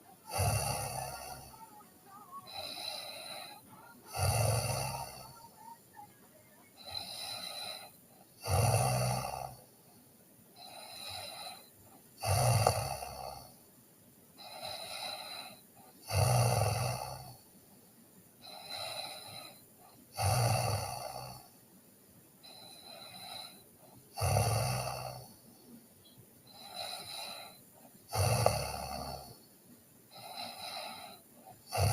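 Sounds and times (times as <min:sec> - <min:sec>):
person snoring: 0:00.0 - 0:05.8, 0:06.8 - 0:09.7, 0:10.6 - 0:13.5, 0:14.4 - 0:17.4, 0:18.4 - 0:21.5, 0:22.4 - 0:25.4, 0:26.5 - 0:29.4, 0:30.1 - 0:31.9
soft breathing: 0:00.0 - 0:13.6, 0:14.4 - 0:16.0, 0:17.0 - 0:20.1, 0:22.3 - 0:31.9.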